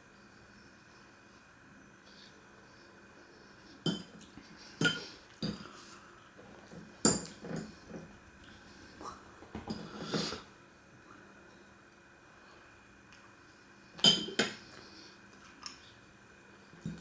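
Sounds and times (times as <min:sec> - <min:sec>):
cutlery clinking against a dish: 0:03.9 - 0:05.8, 0:07.1 - 0:08.0, 0:14.0 - 0:14.6.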